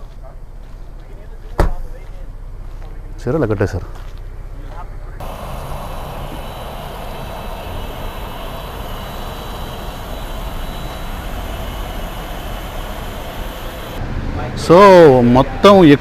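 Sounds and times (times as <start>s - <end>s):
vehicle rumble with hiss: 3.8s - 16.0s
faint high whine: 5.2s - 14.0s.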